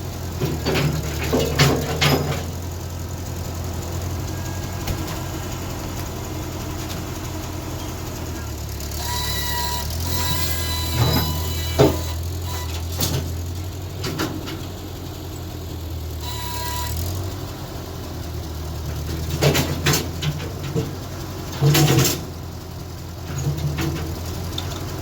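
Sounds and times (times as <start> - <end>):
engine running: 0.0 - 25.0
loud clunks and knocks: 0.4 - 2.6, 10.9 - 13.4, 19.1 - 22.3.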